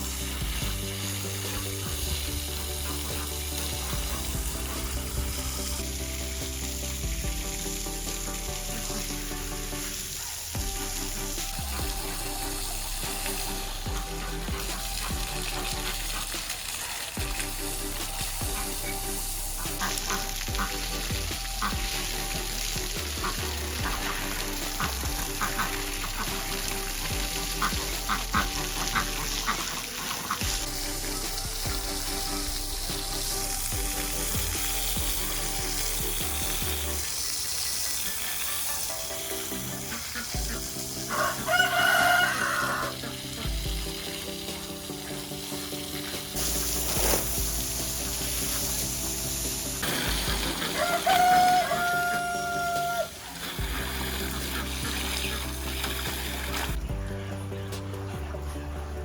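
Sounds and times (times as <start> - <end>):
crackling hiss: 0.0 - 56.8
background music: 0.0 - 59.0
rooster crowing: 41.1 - 43.1, 50.6 - 53.4.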